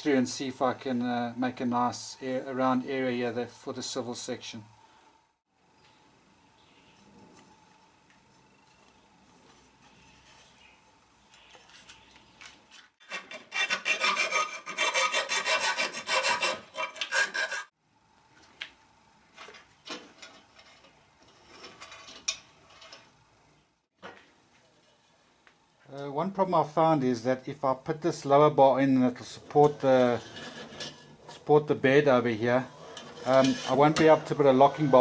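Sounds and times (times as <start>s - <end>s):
scraping: 32.6s - 35.0s.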